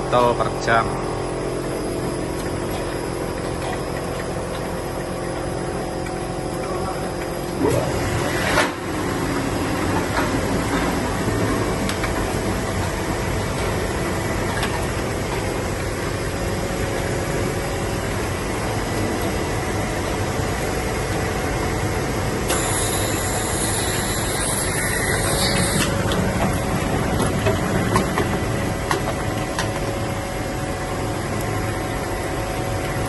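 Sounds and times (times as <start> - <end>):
filling machine mechanical hum: 0.0 - 33.0
machine hiss: 22.5 - 25.9.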